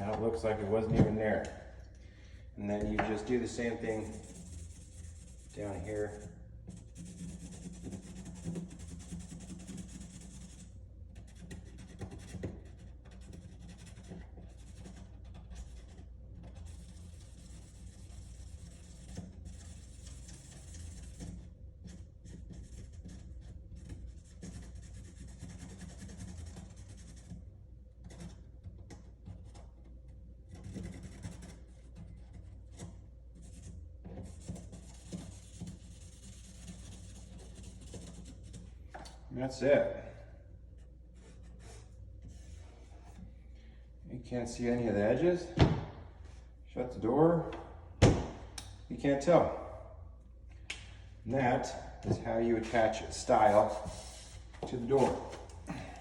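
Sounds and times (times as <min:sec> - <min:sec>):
pen scratching on wood: 0:03.6 - 0:27.4, 0:30.5 - 0:38.7.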